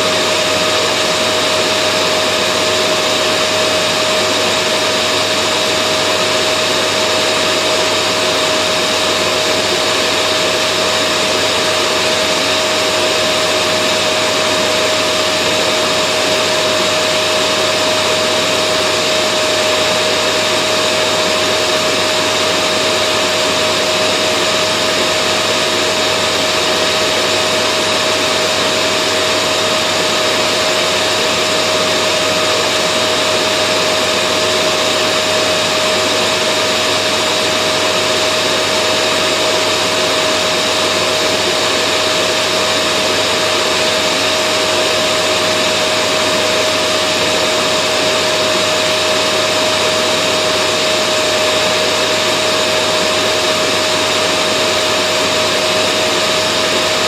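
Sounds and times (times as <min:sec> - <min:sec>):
vacuum cleaner running: 0:00.0 - 0:57.0.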